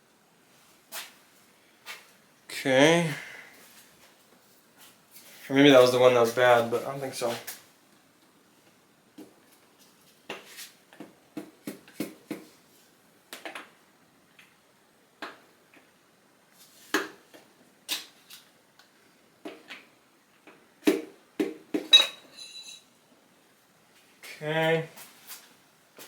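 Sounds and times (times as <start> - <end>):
metal tools clinking: 21.9 - 22.9
high metallic ringing: 21.9 - 23.0.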